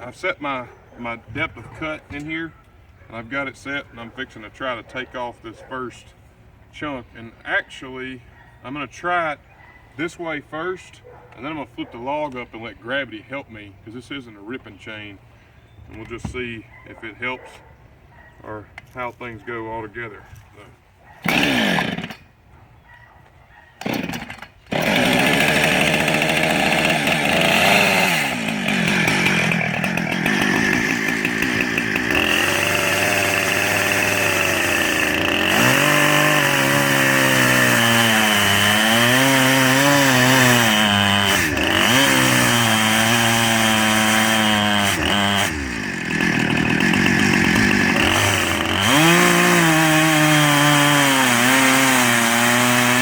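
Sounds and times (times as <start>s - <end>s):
chainsaw cutting log: 19.2s - 22.4s, 23.8s - 53.0s.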